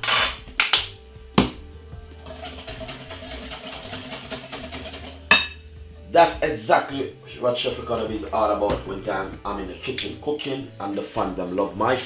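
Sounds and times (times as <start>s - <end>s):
background music: 0.0s - 12.0s
utensil knocking on bowl: 2.2s - 5.6s.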